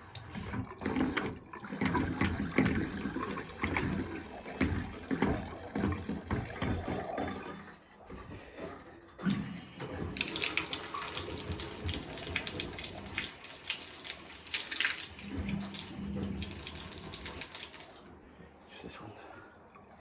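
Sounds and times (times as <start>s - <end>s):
tap running into sink in spurts: 10.0s - 18.1s.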